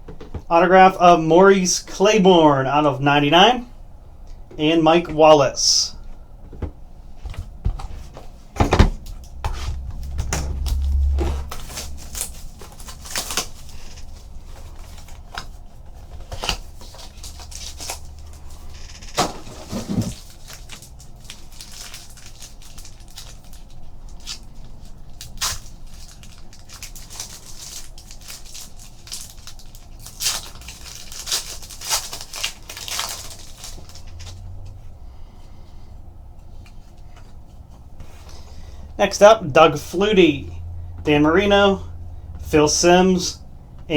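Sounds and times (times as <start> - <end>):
low rumble: 7.7 - 16.1
wrappers crinkling and tearing: 9.2 - 34.5.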